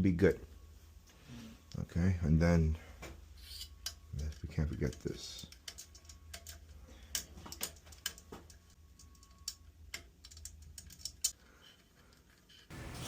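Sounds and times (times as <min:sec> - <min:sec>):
low steady hum: 0:00.0 - 0:12.1
hands clicking and tapping wiring: 0:03.0 - 0:13.0.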